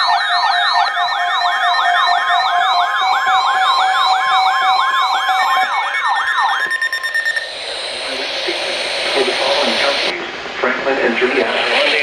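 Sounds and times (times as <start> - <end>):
electronic siren alert tone: 0.0 - 10.1.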